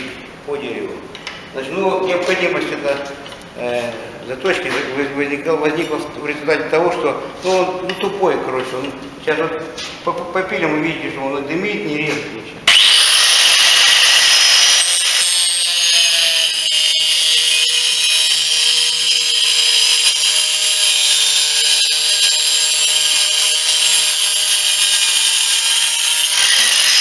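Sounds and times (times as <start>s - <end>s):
angle grinder sawing into wood: 12.7s - 27.0s.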